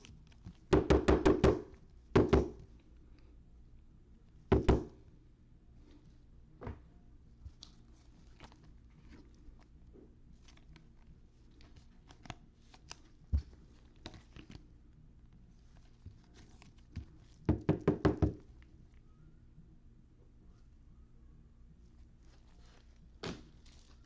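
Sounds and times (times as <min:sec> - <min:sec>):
faint clicks and rustles: 0:05.7 - 0:17.5
cards thumping on a table: 0:23.2 - 0:23.6.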